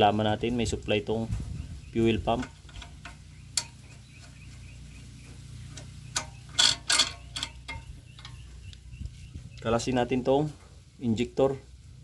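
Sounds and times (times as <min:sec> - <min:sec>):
steady low hum: 0:00.0 - 0:12.0
metal tools clicking and clinking: 0:05.8 - 0:08.4.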